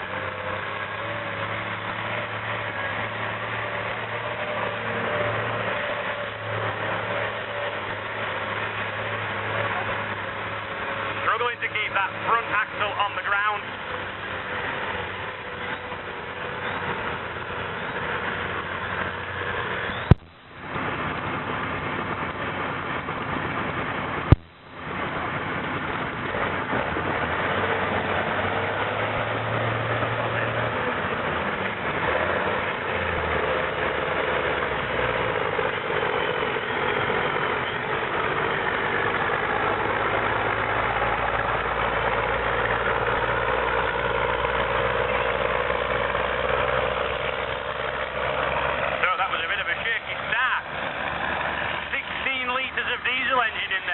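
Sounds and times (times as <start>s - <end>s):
tractor engine running: 0.0s - 53.9s
busy showground crowd noise: 11.2s - 13.7s, 49.0s - 51.1s, 51.7s - 53.9s.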